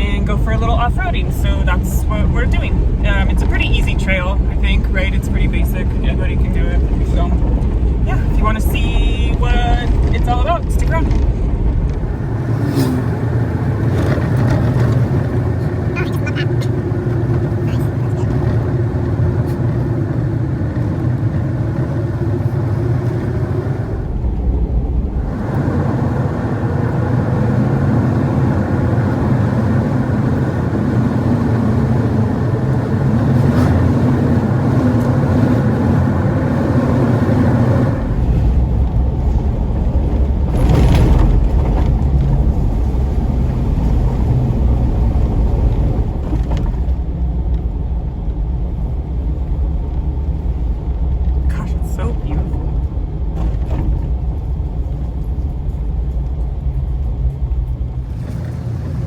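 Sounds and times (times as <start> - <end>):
car engine rumbling: 0.0 - 59.0.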